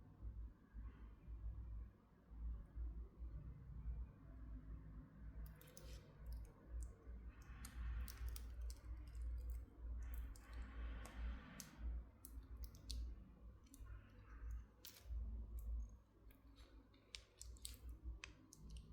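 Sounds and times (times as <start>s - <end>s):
light clicks and taps: 5.4s - 18.9s.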